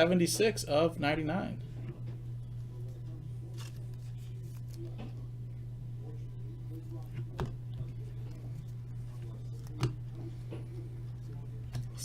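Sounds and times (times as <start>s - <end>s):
cards being handled: 2.6s - 5.3s, 6.8s - 12.0s.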